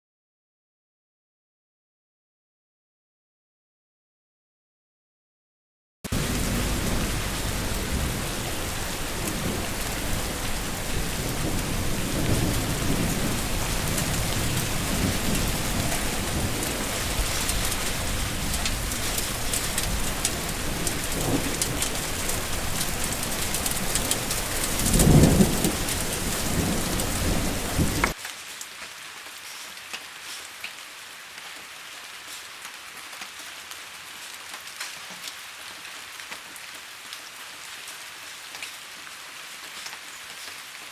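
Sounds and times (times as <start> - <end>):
rolling thunder rumbles: 6.1 - 28.2
heavy rain: 6.1 - 40.9
rain dripping in a gutter: 6.1 - 40.9.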